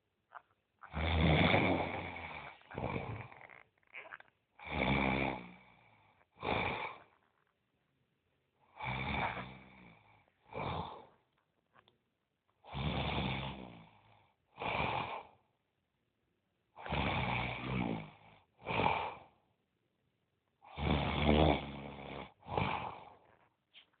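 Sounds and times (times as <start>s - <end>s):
person snoring: 0.8s - 7.2s, 8.7s - 11.2s, 12.6s - 15.4s, 16.8s - 19.4s, 20.6s - 23.4s.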